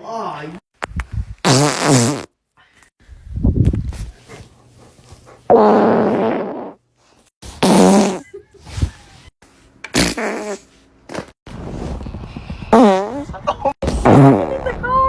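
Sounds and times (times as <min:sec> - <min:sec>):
buzzing farts: 0:01.4 - 0:02.3, 0:05.5 - 0:06.8, 0:07.5 - 0:08.3, 0:09.9 - 0:11.4, 0:12.7 - 0:14.9.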